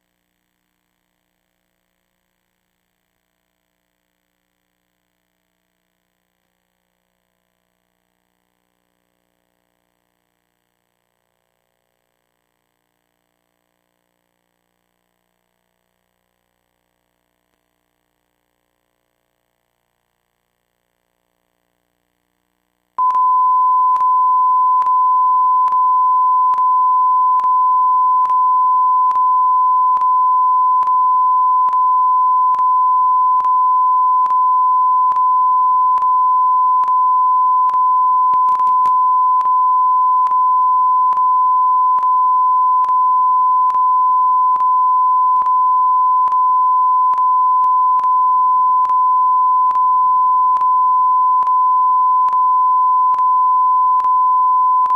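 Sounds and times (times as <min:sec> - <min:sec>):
steady test tone: 0:23.0 - 0:54.9.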